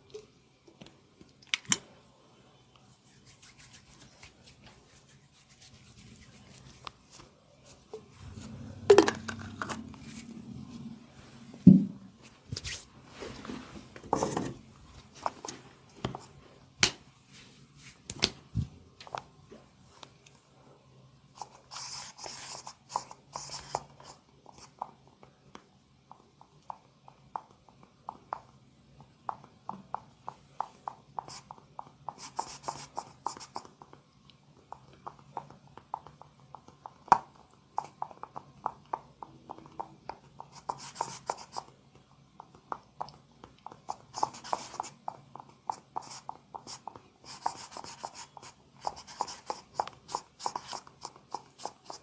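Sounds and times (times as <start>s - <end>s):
rubbing on skin: 2.9s - 7.9s.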